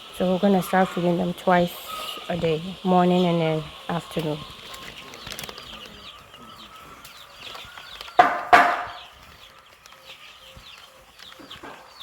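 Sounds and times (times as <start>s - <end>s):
chicken squawks: 0.0s - 9.2s
chicks peeping: 0.0s - 12.0s.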